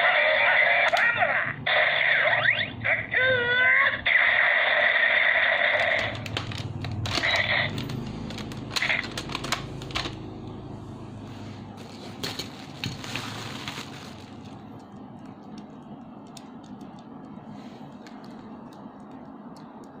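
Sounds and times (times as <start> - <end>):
toy gun electronic sound effect: 0.0 - 6.3, 7.2 - 7.9
plastic toy clicks and rattles: 5.8 - 10.2.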